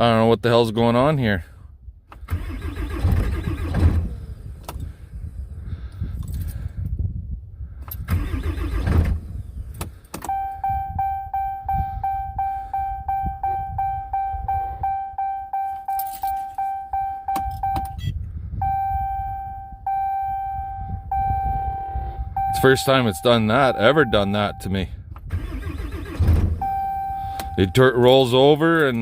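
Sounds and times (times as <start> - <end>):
diesel engine cranking: 2.1 - 5.4, 7.8 - 29.0
low rumble: 8.8 - 28.1
dashboard warning chime: 10.2 - 24.8, 26.6 - 29.0.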